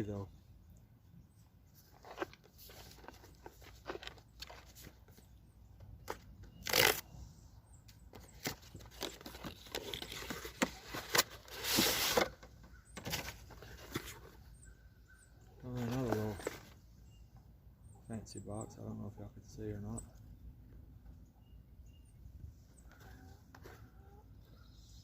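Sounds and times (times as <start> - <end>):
cardboard tearing: 6.1 - 7.1, 8.2 - 12.4
cardboard rustling and clicks: 8.1 - 14.4.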